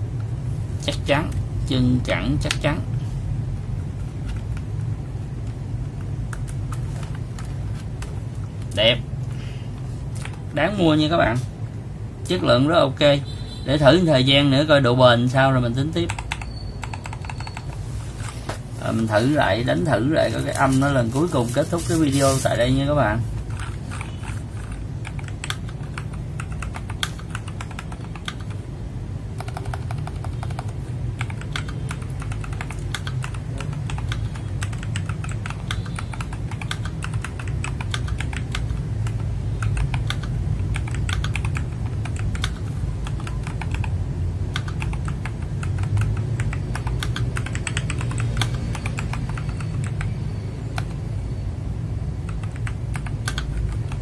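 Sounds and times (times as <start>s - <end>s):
steady low hum: 0.0s - 54.0s
mechanical keyboard key clicks: 29.4s - 43.9s, 44.5s - 50.1s.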